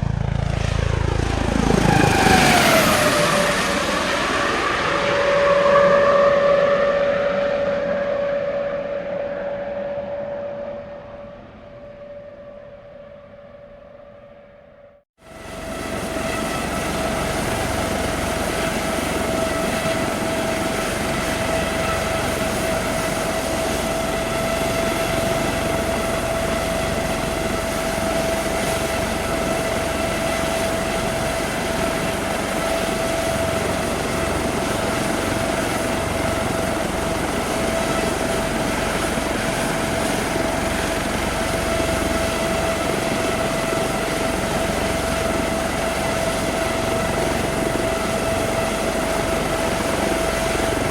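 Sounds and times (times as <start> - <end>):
helicopter running: 0.0 - 12.3, 15.2 - 50.9.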